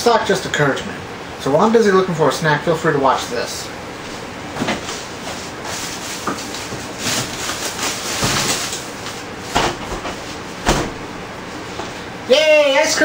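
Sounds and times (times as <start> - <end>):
fan whoosh: 2.8 - 12.4
doors and items knocking: 9.5 - 11.0.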